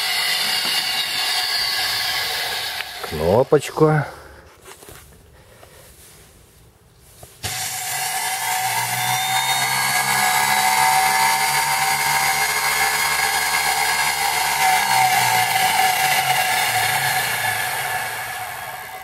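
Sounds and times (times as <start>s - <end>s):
saw motor whining: 0.0s - 3.6s, 7.4s - 19.0s.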